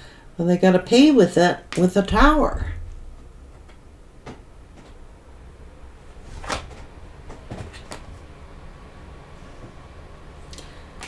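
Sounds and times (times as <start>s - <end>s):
low steady hum: 0.4s - 7.7s.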